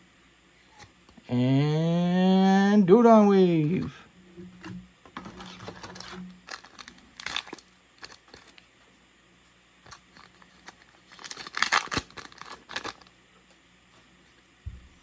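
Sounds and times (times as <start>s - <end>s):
foil wrapper crinkling and tearing: 5.2s - 8.7s, 9.8s - 13.2s.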